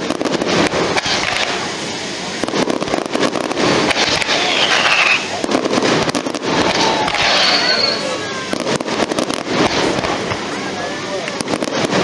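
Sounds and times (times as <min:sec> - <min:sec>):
fireworks crackling and popping: 0:00.0 - 0:12.0
falling firework whistle: 0:03.3 - 0:08.9.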